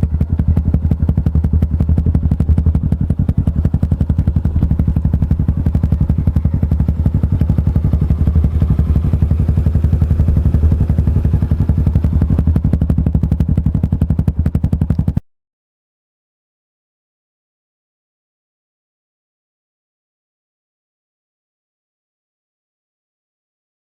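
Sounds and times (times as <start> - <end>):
motorcycle engine idling: 0.0 - 15.2.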